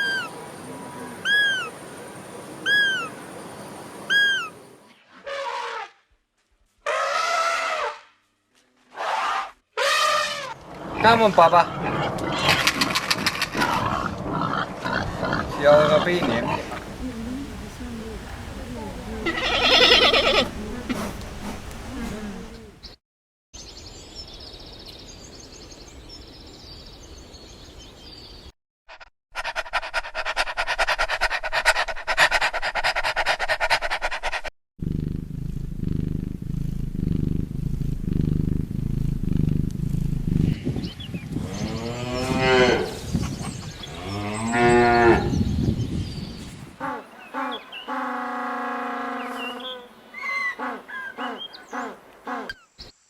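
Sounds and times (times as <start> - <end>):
faint high twittering: 0.0 - 4.8
cows mooing: 16.1 - 20.9, 41.4 - 43.0
loud rapid pulsing: 34.8 - 40.6
low steady rumble: 34.8 - 40.6.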